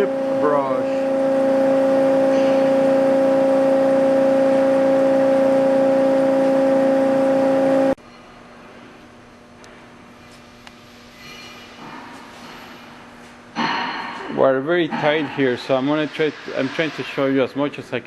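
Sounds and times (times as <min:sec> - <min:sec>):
bandsaw running: 0:00.0 - 0:08.0.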